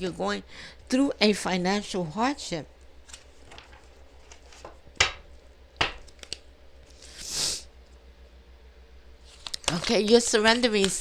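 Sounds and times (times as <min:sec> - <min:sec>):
cards tapping on table: 0:04.5 - 0:05.2, 0:05.8 - 0:06.2.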